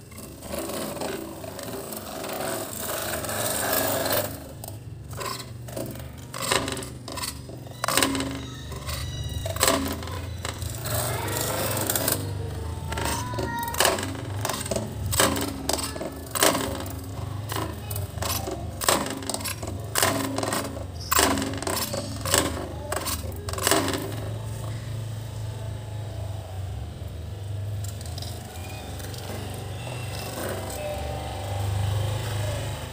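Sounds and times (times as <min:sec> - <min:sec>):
plastic toys knocking and clattering: 0:00.0 - 0:25.6, 0:27.4 - 0:32.9.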